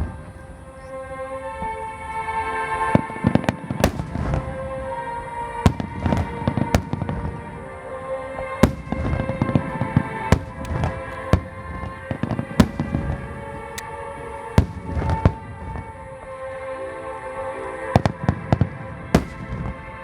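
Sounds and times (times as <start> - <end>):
music: 0.0 - 20.0
fireworks bangs: 2.8 - 16.2, 18.0 - 20.0.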